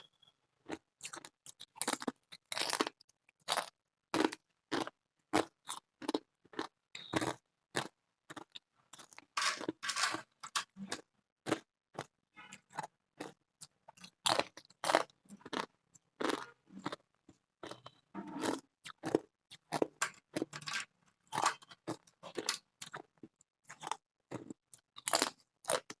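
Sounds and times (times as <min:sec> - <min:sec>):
ice chips being chewed: 0:18.4 - 0:23.1, 0:23.7 - 0:26.0.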